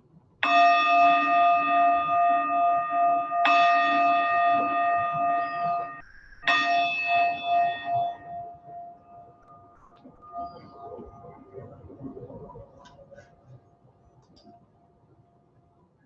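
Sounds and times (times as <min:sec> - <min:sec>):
meditation bowl bell ringing: 0:00.4 - 0:09.9.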